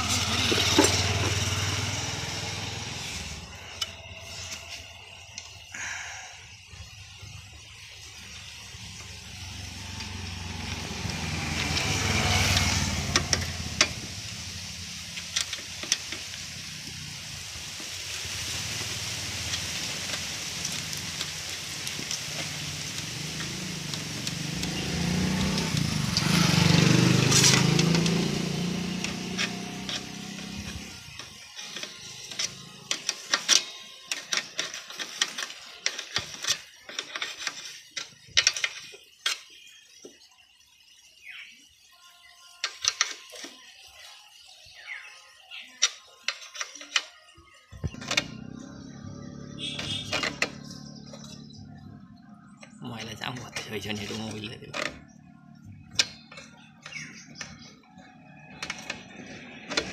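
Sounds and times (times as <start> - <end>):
motor vehicles passing by: 0.0 - 32.9, 47.8 - 59.9.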